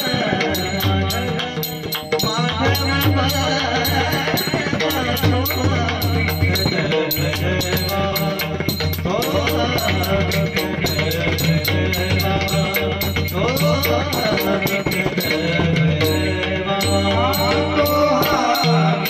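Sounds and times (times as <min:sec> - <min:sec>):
hand drum playing: 0:00.0 - 0:19.0
small hand cymbals striking: 0:00.0 - 0:19.0.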